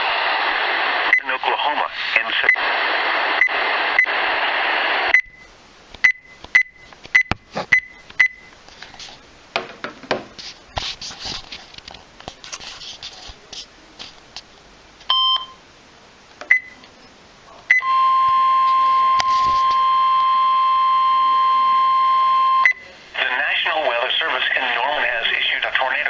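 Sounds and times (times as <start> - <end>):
radio broadcast hiss: 0.0 - 6.0, 10.3 - 15.0, 19.2 - 19.8, 22.8 - 26.0
lower electronic beep: 17.7 - 22.8.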